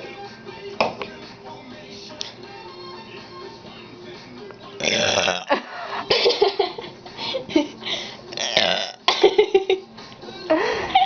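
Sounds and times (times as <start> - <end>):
woman burping: 4.8 - 5.6, 8.3 - 9.3.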